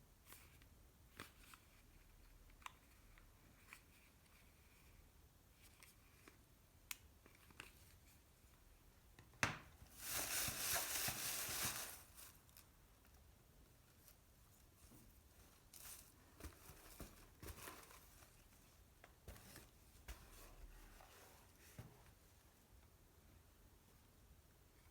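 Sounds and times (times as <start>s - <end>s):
wrapping tearing and crinkling: 9.9s - 12.7s.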